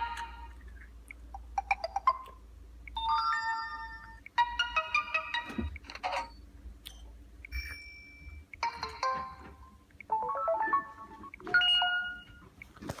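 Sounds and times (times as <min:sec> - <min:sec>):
phone ringtone melodies: 0:03.0 - 0:05.7, 0:07.6 - 0:12.5.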